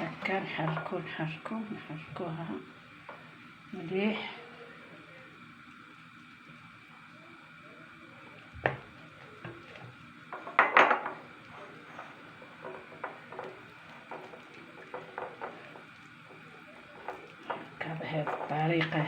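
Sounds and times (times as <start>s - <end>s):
utensil scraping a cooking pot: 8.8s - 19.0s.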